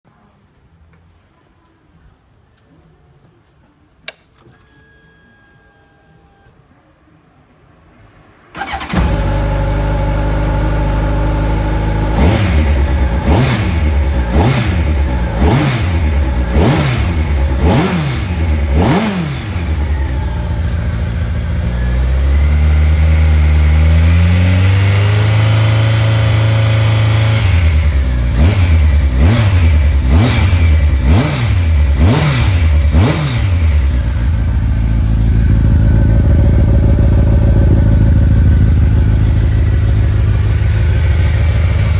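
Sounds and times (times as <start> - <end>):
motorcycle engine idling and revving: 8.6 - 41.9.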